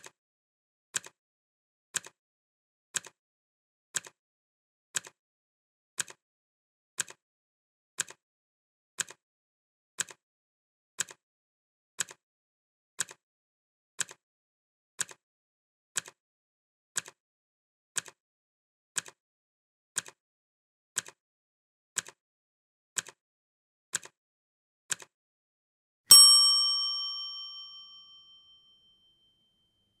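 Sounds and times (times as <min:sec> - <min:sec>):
timer bell ding: 0:26.1 - 0:29.1.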